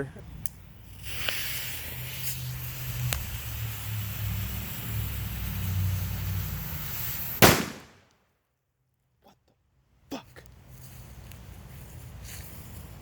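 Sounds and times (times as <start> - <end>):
fuse hissing: 0.7 - 7.8.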